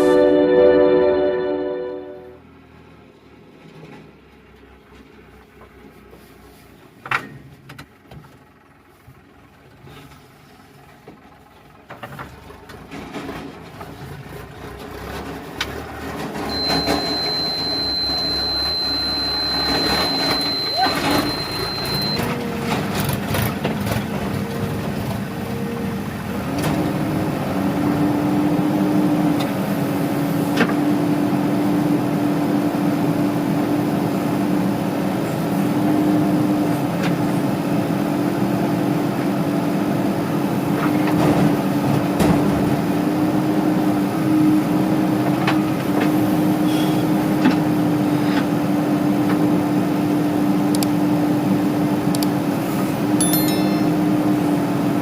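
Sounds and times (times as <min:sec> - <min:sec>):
earthmoving machine engine: 0:08.4 - 0:33.8, 0:50.1 - 0:55.0.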